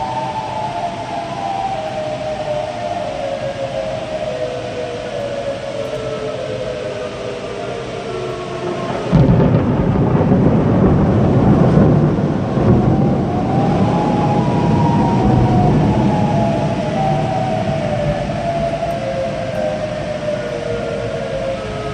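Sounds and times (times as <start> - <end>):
warning sirens wailing: 0.0 - 21.9
thunder boom and rumble: 8.7 - 21.9.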